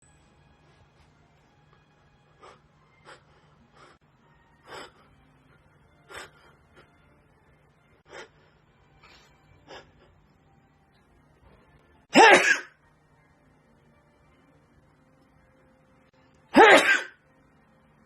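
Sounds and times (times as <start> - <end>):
sharp gasping breaths: 2.3 - 4.0, 4.6 - 5.2, 6.0 - 7.0, 8.0 - 10.2.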